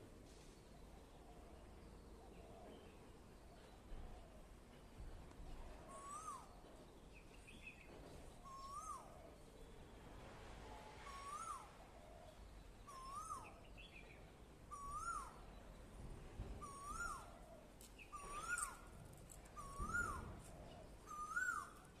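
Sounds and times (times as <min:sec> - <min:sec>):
bird whistled call: 0:05.9 - 0:06.6, 0:08.4 - 0:09.2, 0:11.0 - 0:11.7, 0:12.9 - 0:14.0, 0:14.7 - 0:15.5, 0:16.6 - 0:17.4, 0:18.0 - 0:18.8, 0:19.6 - 0:20.4, 0:21.1 - 0:21.8.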